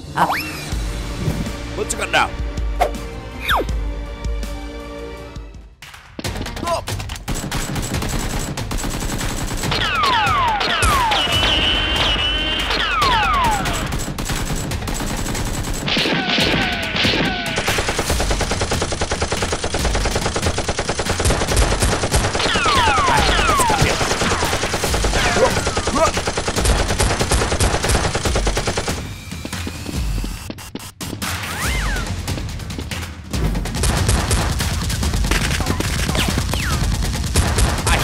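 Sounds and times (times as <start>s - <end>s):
rapid automatic gunfire: 7.2s - 29.7s, 33.6s - 38.0s.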